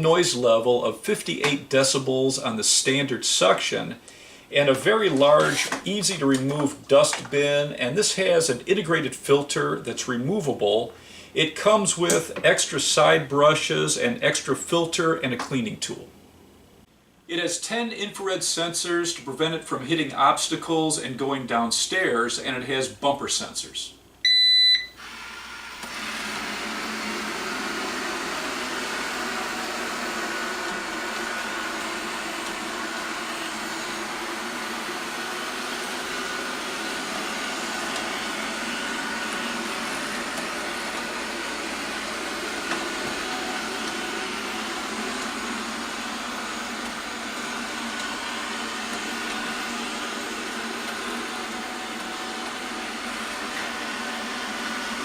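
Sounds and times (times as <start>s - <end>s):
robot vacuum running: 25.0s - 55.0s.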